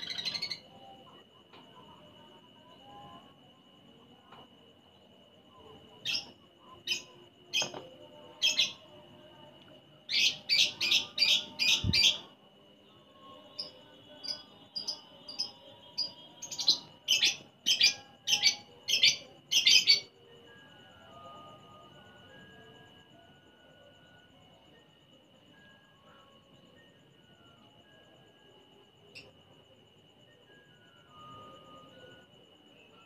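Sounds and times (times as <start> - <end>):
lovebird chirping: 0.0 - 1.0, 6.0 - 8.9, 10.1 - 12.4, 13.5 - 20.1.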